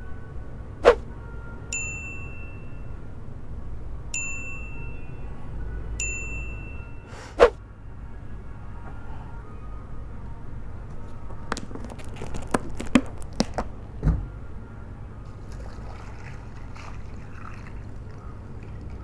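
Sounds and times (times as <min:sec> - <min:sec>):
ringing metallic dings: 0:01.7 - 0:03.0, 0:04.1 - 0:05.4, 0:06.0 - 0:07.2.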